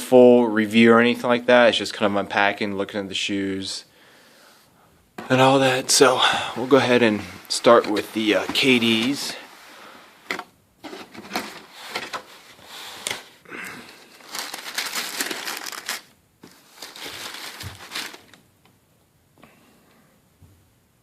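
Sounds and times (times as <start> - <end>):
paper packaging crinkling: 10.8 - 18.4.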